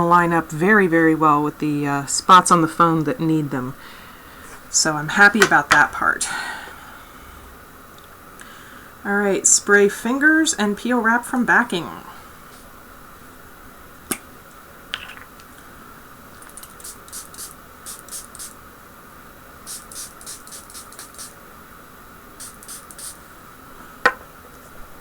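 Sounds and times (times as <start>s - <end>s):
spray bottle hissing sprays: 16.4s - 18.6s, 19.6s - 21.4s, 22.4s - 23.2s.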